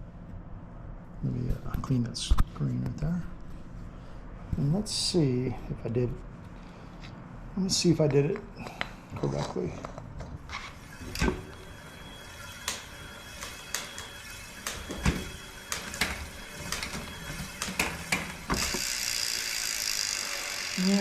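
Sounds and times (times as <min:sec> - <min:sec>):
bicycle chain running over cassette: 0:18.5 - 0:21.0.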